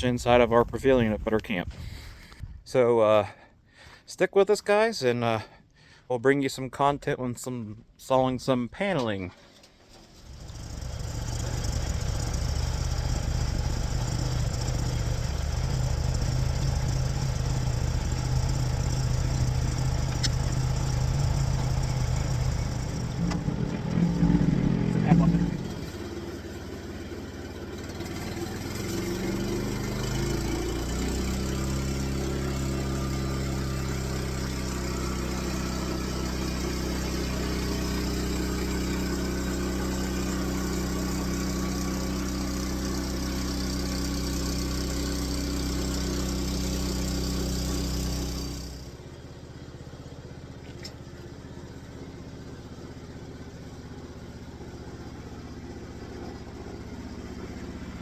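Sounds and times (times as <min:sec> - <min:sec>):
sawmill engine running: 0:09.9 - 0:49.0, 0:51.7 - 0:58.0.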